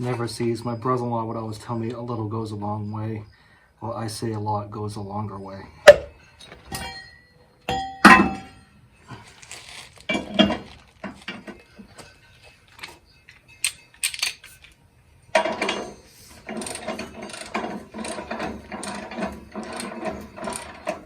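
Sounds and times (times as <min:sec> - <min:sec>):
sharp metal strikes: 0:05.9 - 0:06.1, 0:07.7 - 0:08.6
metal tools clinking: 0:05.9 - 0:21.0
rapid mechanical clicking: 0:16.4 - 0:21.0.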